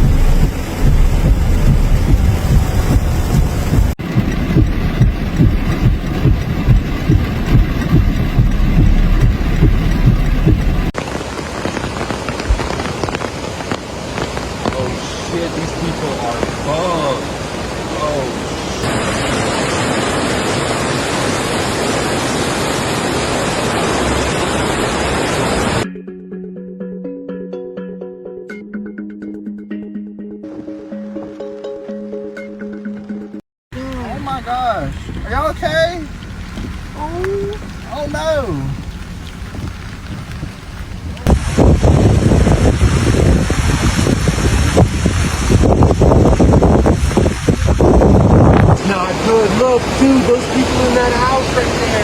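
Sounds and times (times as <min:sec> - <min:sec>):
vehicle engine pulsing rumble: 0:00.0 - 0:19.0, 0:33.8 - 0:52.0
rush of floodwater: 0:00.0 - 0:25.8, 0:33.8 - 0:52.0
music with pitched instruments: 0:25.8 - 0:33.4.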